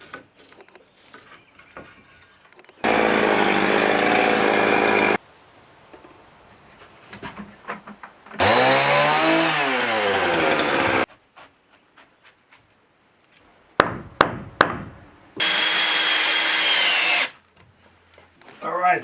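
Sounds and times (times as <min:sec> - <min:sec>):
chainsaw cutting wood: 0:02.8 - 0:05.2, 0:08.4 - 0:11.1, 0:15.4 - 0:17.4
power tool running: 0:02.8 - 0:05.2, 0:08.4 - 0:11.1, 0:15.4 - 0:17.4
sharp knocks: 0:13.8 - 0:15.5.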